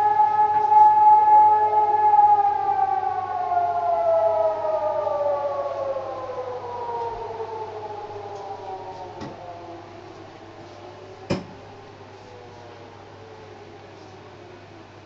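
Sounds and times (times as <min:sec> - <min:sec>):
siren winding down: 0:00.0 - 0:12.6.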